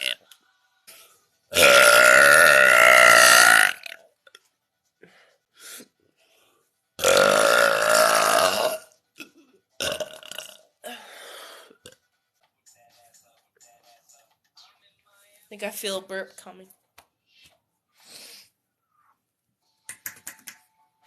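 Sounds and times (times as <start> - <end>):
person burping: 0.0 - 0.2, 1.5 - 4.0, 7.0 - 12.0.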